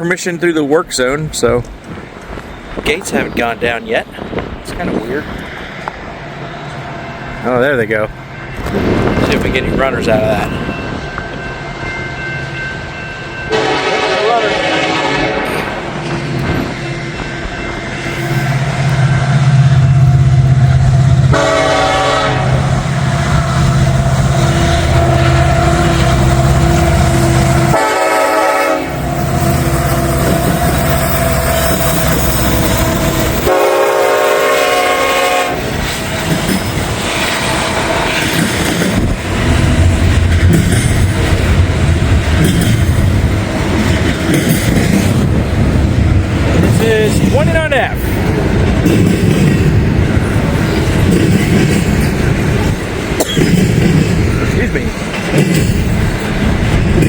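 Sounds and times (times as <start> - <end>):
diesel locomotive engines rumbling: 0.0 - 57.0
train air horn blasts: 13.5 - 16.0, 21.3 - 31.9, 32.7 - 36.3.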